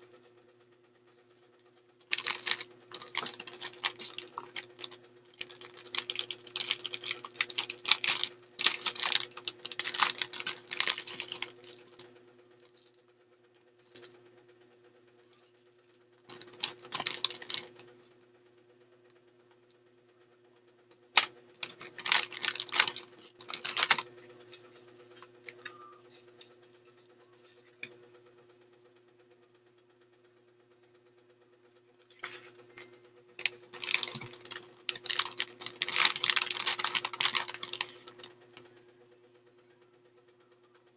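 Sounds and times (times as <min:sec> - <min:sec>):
steady low hum: 0:00.0 - 0:40.9
packaging clicking and rustling: 0:02.1 - 0:12.0, 0:16.3 - 0:17.8, 0:21.2 - 0:24.1, 0:33.4 - 0:38.3.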